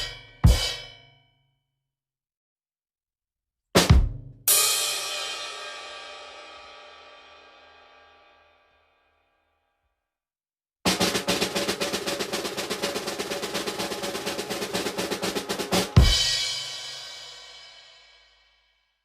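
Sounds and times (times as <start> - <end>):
snare drum roll: 10.9 - 17.3.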